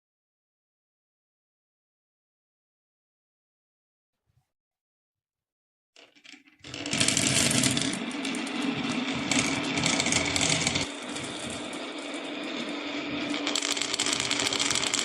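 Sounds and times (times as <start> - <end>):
marbles rattling down a marble run: 6.0 - 15.0.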